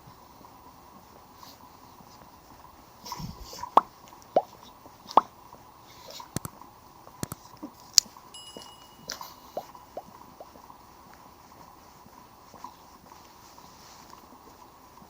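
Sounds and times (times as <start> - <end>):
faint steady background: 0.0 - 15.0
small clicks: 6.1 - 9.2.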